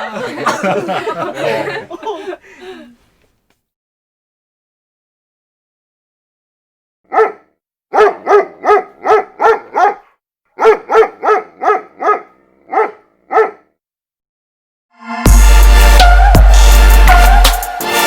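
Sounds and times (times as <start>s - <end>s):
dog barking: 7.1s - 13.8s.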